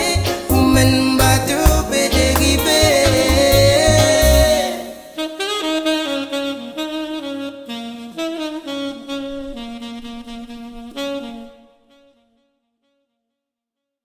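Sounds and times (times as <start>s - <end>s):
band with heavy bass: 0.0s - 4.9s
wind instrument playing slow melody: 0.0s - 12.2s.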